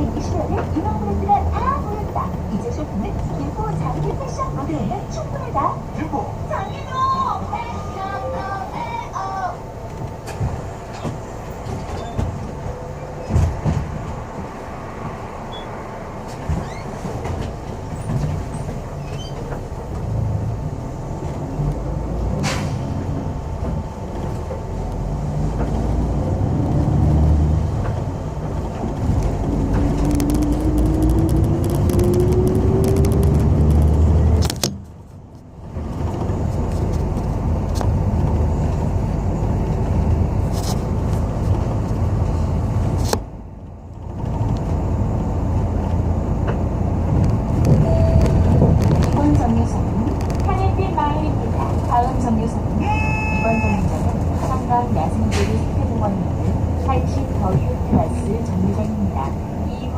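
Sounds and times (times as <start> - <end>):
bus engine and road rumble: 0.0 - 59.9
rattles and clicks: 27.7 - 38.9, 42.8 - 50.8
whine rising in pitch: 29.4 - 34.0.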